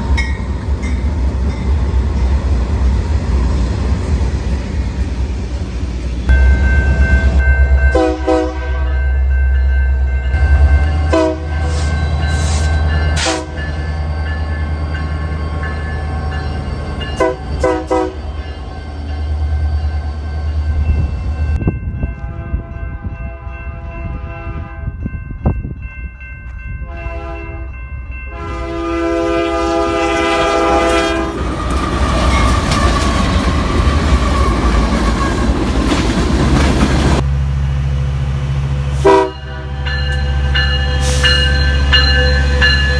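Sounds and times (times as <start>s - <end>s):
rushing rattle of passing train: 0.0s - 42.9s
locomotive horn blasts: 7.7s - 9.3s, 10.4s - 12.0s, 13.2s - 13.7s, 17.2s - 18.4s, 22.1s - 25.0s, 26.8s - 27.7s, 28.3s - 31.4s, 39.0s - 42.9s.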